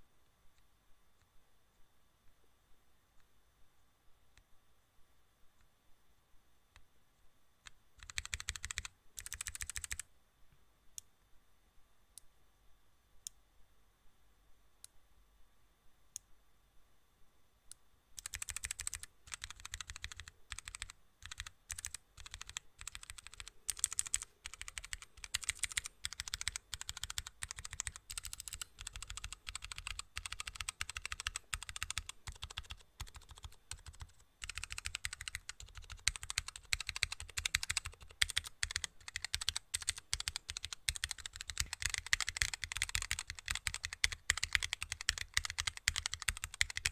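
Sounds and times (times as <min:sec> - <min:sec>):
rapid irregular clicking: 0:08.0 - 0:10.0, 0:18.2 - 0:46.9.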